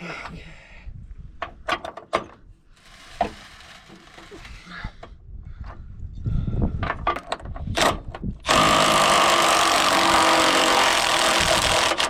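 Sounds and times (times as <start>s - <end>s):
power tool running: 8.5s - 12.0s.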